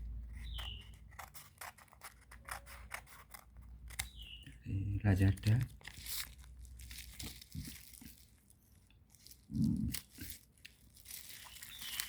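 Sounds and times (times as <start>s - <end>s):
packaging crinkling and tearing: 5.2s - 12.0s.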